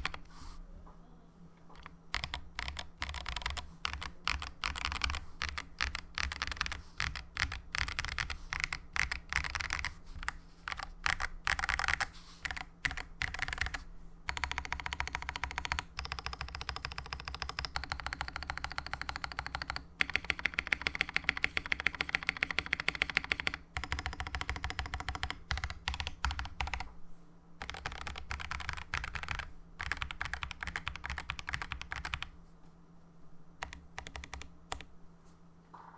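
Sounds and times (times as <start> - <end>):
fast typing on mechanical keyboard: 0.0 - 0.2, 1.8 - 26.9, 27.6 - 32.3, 33.6 - 34.9.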